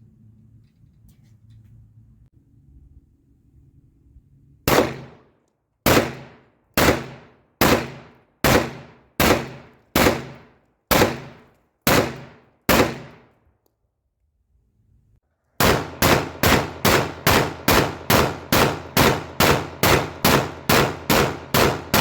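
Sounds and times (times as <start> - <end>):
pistol shots with echo: 4.7 - 5.2, 5.9 - 13.3, 15.6 - 22.0.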